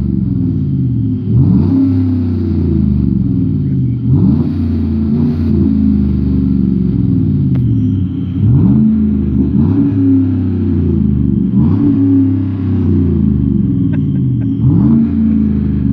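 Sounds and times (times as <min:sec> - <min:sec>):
pickup engine idling and revving: 0:00.0 - 0:15.9.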